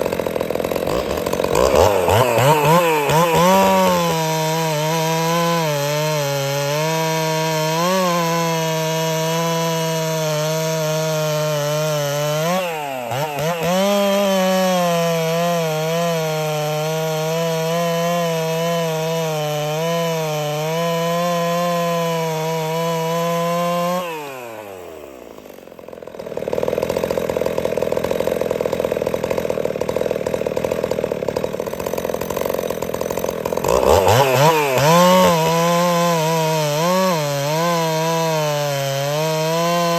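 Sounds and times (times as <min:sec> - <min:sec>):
chainsaw cutting at full throttle: 0:00.0 - 0:39.9.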